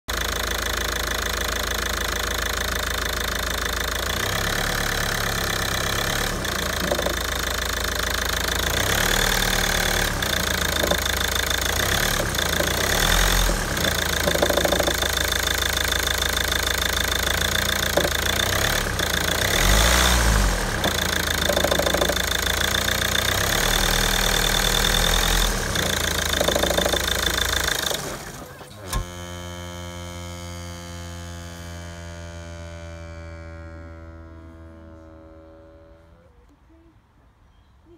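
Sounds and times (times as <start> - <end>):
engine knocks: 0.1 - 29.4
diesel engine idling: 0.1 - 36.4.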